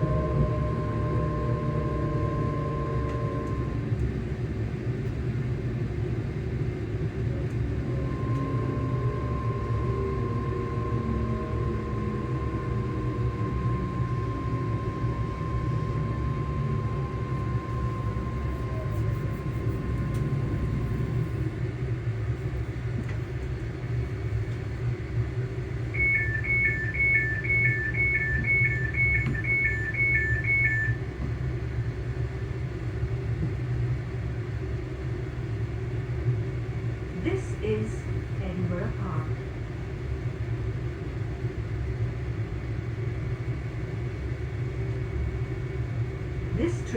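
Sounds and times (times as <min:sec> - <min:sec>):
traction motor hum: 0:00.0 - 0:34.1
steady whine: 0:00.0 - 0:34.2, 0:35.0 - 0:42.0, 0:42.9 - 0:46.9
train low rumble: 0:00.0 - 0:46.9
two-tone beeps: 0:26.0 - 0:31.0.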